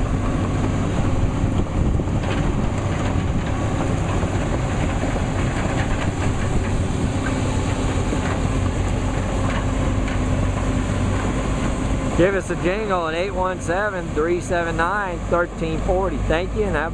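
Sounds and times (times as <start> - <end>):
excavator diesel engine running: 0.0 - 16.9.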